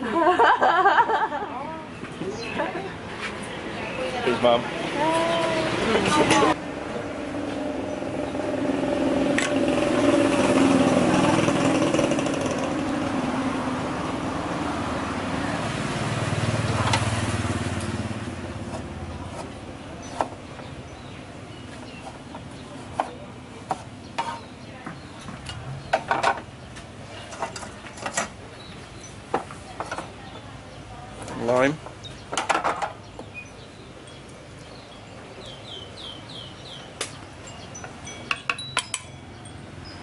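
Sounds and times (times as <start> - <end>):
vehicle engine: 2.0 - 33.4.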